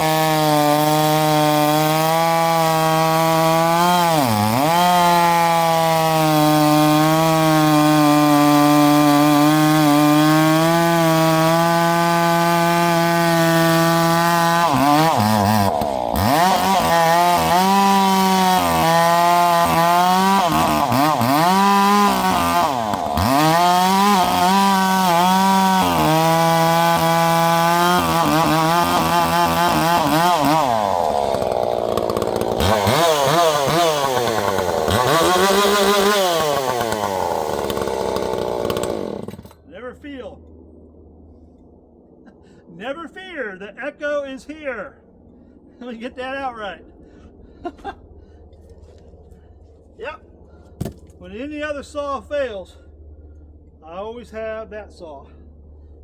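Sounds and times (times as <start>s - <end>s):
chainsaw running and revving: 0.0s - 39.6s.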